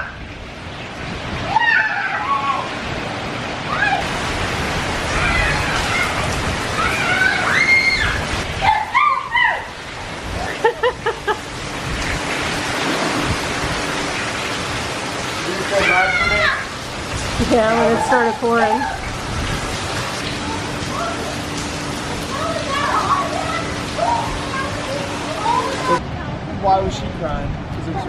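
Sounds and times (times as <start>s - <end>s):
strong wind buffeting microphone: 2.6s - 15.2s, 16.1s - 22.6s, 23.4s - 28.0s.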